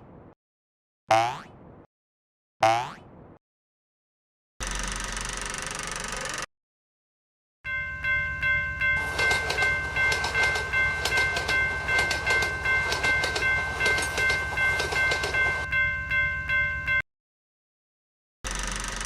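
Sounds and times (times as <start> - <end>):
level-crossing warning bell: 7.6 - 17.0
train wheels clattering: 9.0 - 15.7.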